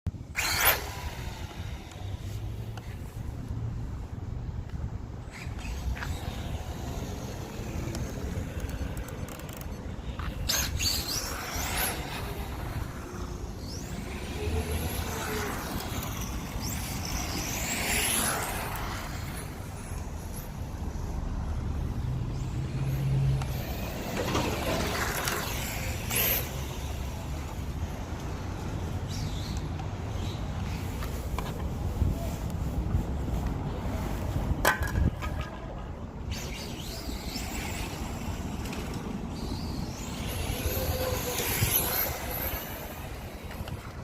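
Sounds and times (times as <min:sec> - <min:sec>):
rc car motor whining: 0:00.3 - 0:03.1, 0:05.2 - 0:21.1, 0:21.8 - 0:29.6, 0:36.3 - 0:44.0.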